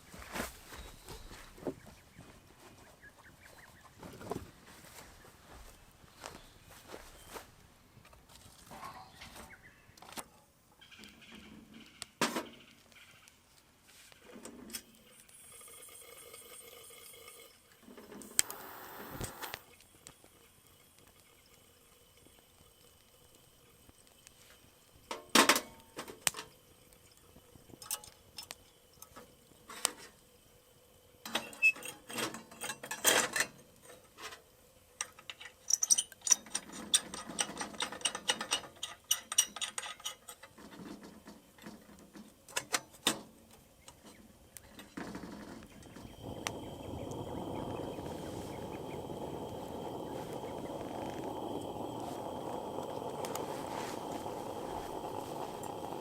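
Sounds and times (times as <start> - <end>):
short hissing burst: 17.9 - 19.8, 46.1 - 56.0.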